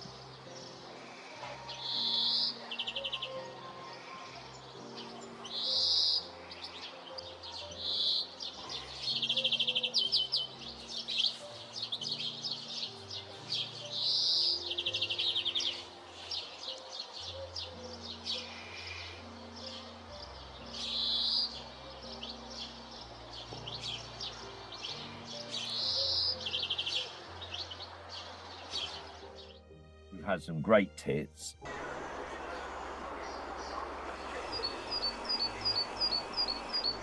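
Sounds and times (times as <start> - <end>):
soft background music: 0.0 - 37.0
songbird harsh notes and trills: 30.2 - 37.0.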